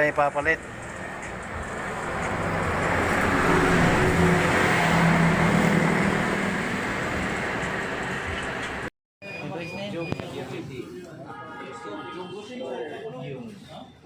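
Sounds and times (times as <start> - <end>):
vehicle engine and road noise: 0.0 - 8.9.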